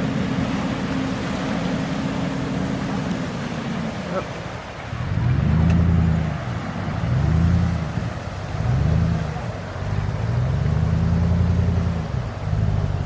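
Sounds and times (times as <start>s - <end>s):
off-road vehicle engine revving: 0.0s - 13.0s.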